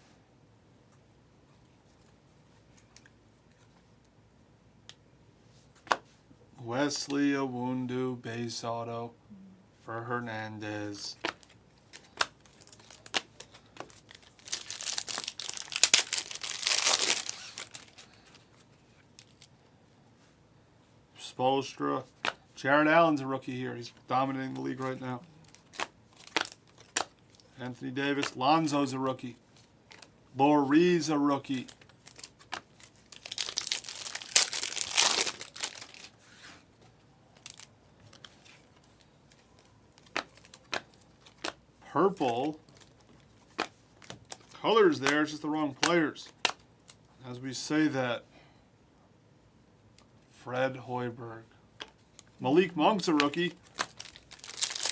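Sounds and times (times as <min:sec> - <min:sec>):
foil wrapper tearing and crinkling: 0:11.3 - 0:18.2, 0:25.4 - 0:27.5, 0:31.5 - 0:36.2, 0:37.4 - 0:38.4, 0:53.2 - 0:54.9.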